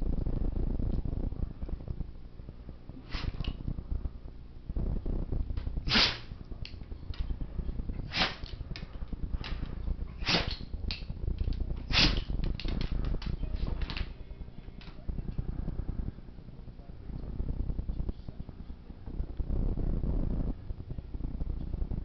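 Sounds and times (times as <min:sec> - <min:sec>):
dog sneezing: 0:03.1 - 0:03.5, 0:05.9 - 0:06.3, 0:08.1 - 0:08.5, 0:10.2 - 0:10.6, 0:11.9 - 0:12.3.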